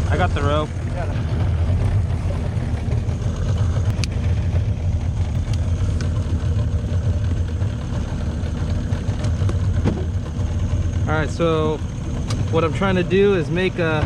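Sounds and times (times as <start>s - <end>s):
boat engine idling: 0.0s - 14.0s.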